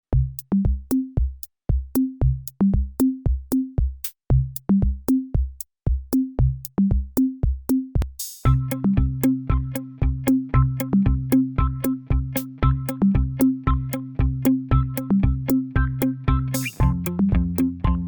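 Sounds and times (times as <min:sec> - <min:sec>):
drum-machine beat: 0:00.1 - 0:18.0
plucked bass notes: 0:08.5 - 0:18.0.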